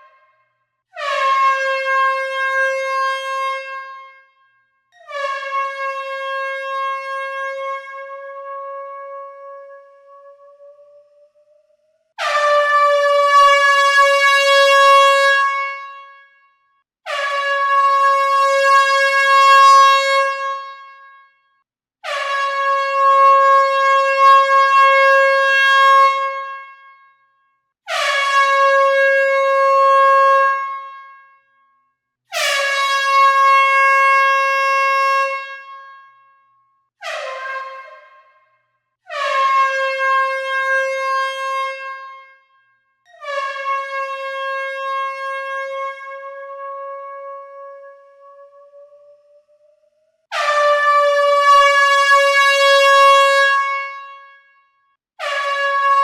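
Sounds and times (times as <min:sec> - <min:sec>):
air horn blasts: 0:01.0 - 0:10.5, 0:12.2 - 0:16.4, 0:27.9 - 0:31.3, 0:37.0 - 0:38.4, 0:39.1 - 0:48.1, 0:50.3 - 0:54.6.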